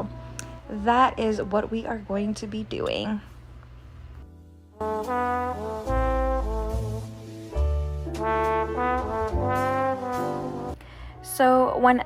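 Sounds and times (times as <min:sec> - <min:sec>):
deep bass line: 0:04.2 - 0:10.8
brass music: 0:04.6 - 0:10.8.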